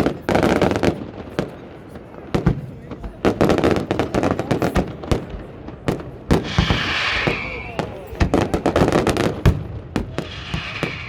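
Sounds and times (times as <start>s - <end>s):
firework bangs: 0.0s - 11.0s
hissing crackling firework shell: 5.9s - 11.0s.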